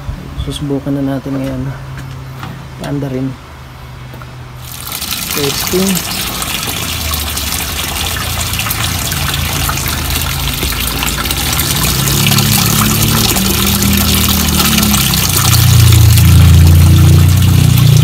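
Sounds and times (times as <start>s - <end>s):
washing machine filling with water: 4.6s - 18.0s
low hum: 6.6s - 18.0s.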